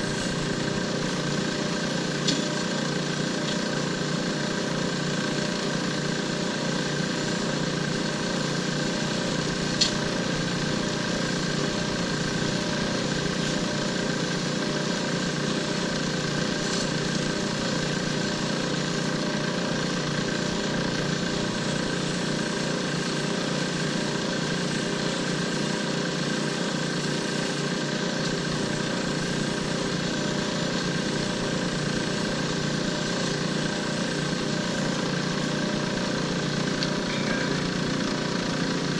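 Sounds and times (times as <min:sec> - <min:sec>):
lathe motor running: 0:00.0 - 0:38.9
sharp click: 0:09.8 - 0:10.0.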